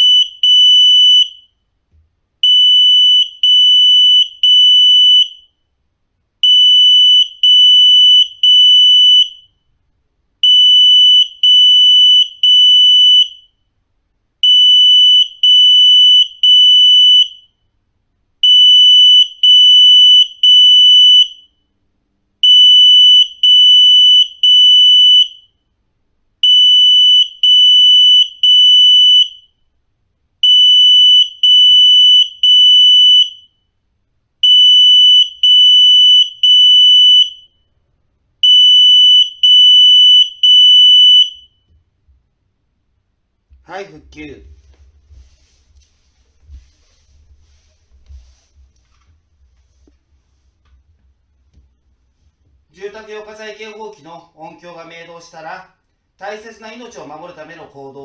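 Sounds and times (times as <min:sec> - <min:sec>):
smoke alarm beeping: 0:00.0 - 0:01.5, 0:02.4 - 0:05.5, 0:06.4 - 0:09.5, 0:10.4 - 0:13.5, 0:14.4 - 0:17.6, 0:18.4 - 0:21.6, 0:22.4 - 0:25.6, 0:26.4 - 0:29.5, 0:30.4 - 0:33.7, 0:34.4 - 0:37.7, 0:38.4 - 0:41.7.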